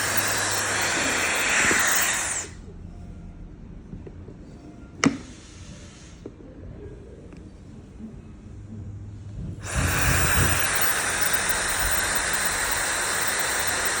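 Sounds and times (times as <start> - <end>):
hair dryer running: 0.0 - 2.6, 9.6 - 14.0.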